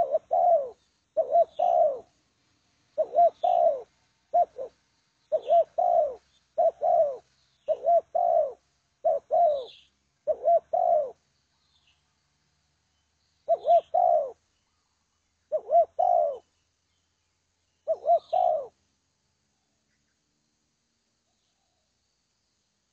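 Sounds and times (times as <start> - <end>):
dove cooing: 0.0 - 2.2, 3.0 - 11.2, 13.5 - 14.5, 15.5 - 16.5, 17.8 - 18.8.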